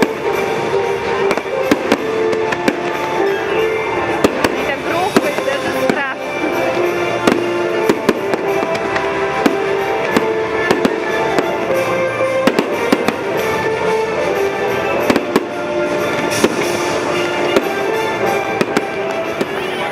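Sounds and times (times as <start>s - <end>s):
fireworks bangs and crackles: 0.0s - 19.9s
music with held notes: 0.0s - 19.9s.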